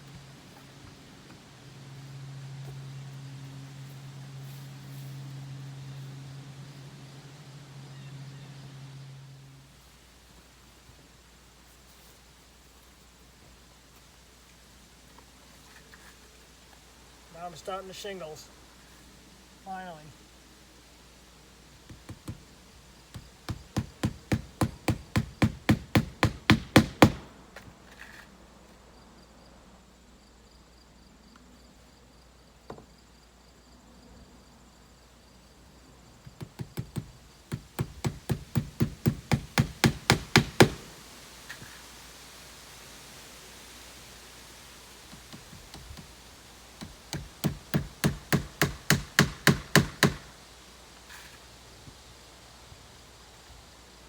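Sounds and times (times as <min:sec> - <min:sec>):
hammer driving nails into shingles: 0:21.9 - 0:22.5, 0:23.1 - 0:27.3, 0:36.3 - 0:40.9, 0:46.8 - 0:50.3.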